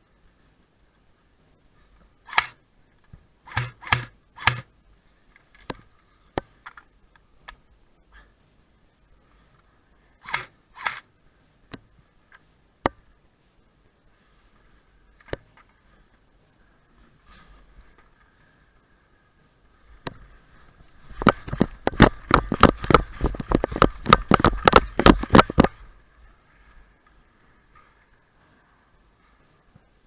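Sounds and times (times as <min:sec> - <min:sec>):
airsoft gun shots: 0:02.3 - 0:02.6, 0:03.5 - 0:04.7, 0:10.2 - 0:11.0.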